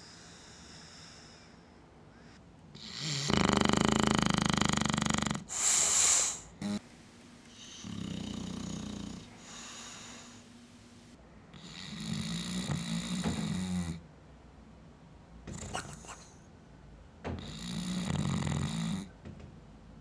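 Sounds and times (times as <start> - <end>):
dog snoring: 2.8 - 6.8, 7.5 - 10.4, 11.6 - 14.0, 17.4 - 19.2
hissing breath out: 5.5 - 6.5.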